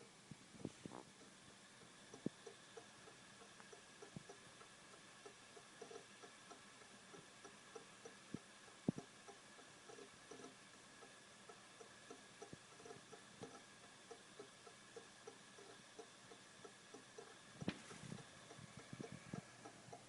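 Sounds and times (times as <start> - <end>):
hard drive ticking: 0.0 - 20.0
soft hiss: 0.0 - 20.0.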